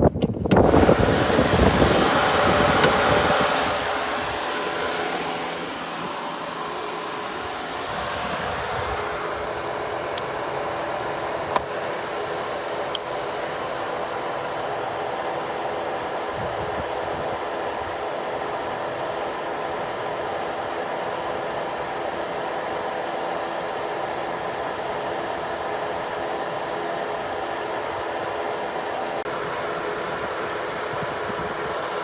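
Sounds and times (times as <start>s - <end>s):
hydraulic pump hiss: 0.5s - 15.4s
electric motor whine: 0.5s - 22.9s.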